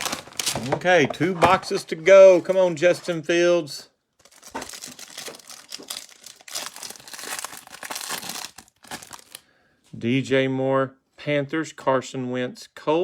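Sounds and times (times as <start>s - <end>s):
wrapping crinkling and tearing: 0.0s - 0.8s, 4.2s - 9.4s.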